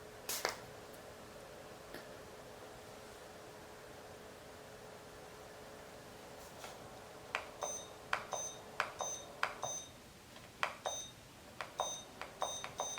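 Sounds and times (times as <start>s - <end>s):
faint high electronic beep: 7.6s - 10.0s, 10.8s - 11.2s, 11.8s - 12.9s.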